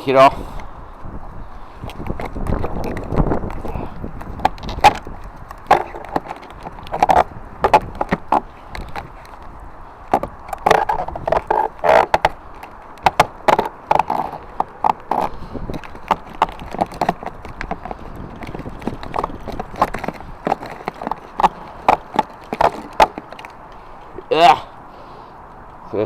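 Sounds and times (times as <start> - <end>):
gutter knocking and creaking: 1.8 - 24.9.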